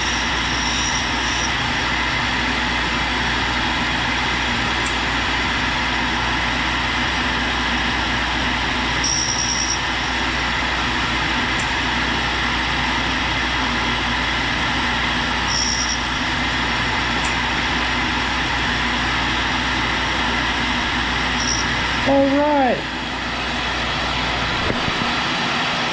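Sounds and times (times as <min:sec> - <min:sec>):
brief high-pitched squeals: 0:00.0 - 0:01.7, 0:09.0 - 0:10.2, 0:15.4 - 0:16.2, 0:21.3 - 0:22.0
tool grinder grinding: 0:00.0 - 0:02.6, 0:15.4 - 0:16.6, 0:21.2 - 0:22.1.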